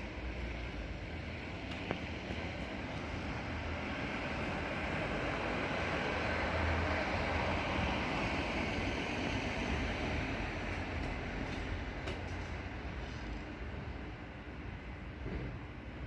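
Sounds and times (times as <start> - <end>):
road traffic passing: 0.0 - 16.0.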